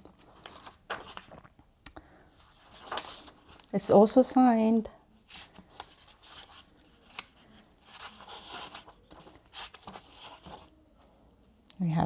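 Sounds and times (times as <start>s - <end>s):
book pages turning: 0.0s - 1.6s, 2.4s - 3.8s, 5.2s - 10.8s.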